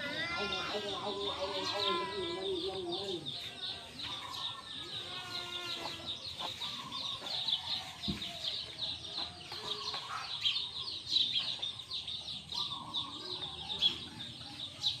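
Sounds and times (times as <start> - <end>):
chicks peeping: 0.6 - 15.0
chickens clucking low: 5.8 - 15.0.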